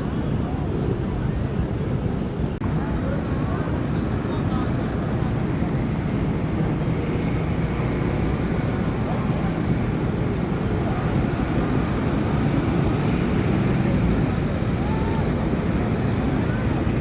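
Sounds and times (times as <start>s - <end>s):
city traffic rumble: 0.0s - 17.0s.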